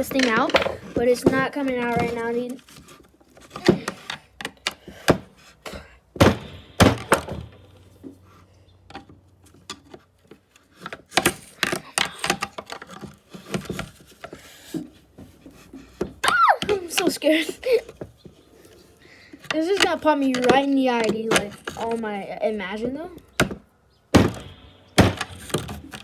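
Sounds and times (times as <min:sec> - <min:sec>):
tool knocking on metal: 0:24.2 - 0:25.8.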